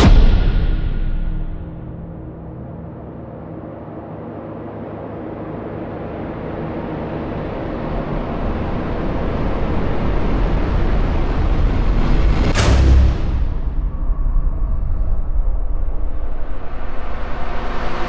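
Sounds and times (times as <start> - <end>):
cinematic riser noise: 0.0 - 18.0.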